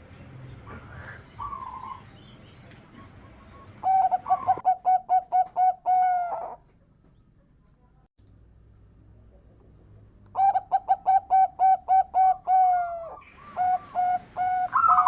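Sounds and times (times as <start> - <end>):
dove cooing: 0.6 - 2.1, 2.8 - 6.6, 10.3 - 15.0.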